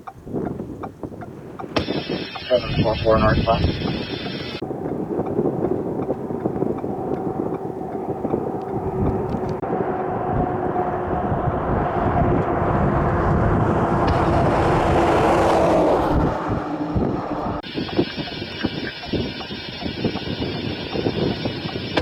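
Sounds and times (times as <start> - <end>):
vehicle engine and road drone: 1.6 - 22.0
rushing noise: 1.8 - 4.6, 12.5 - 22.0.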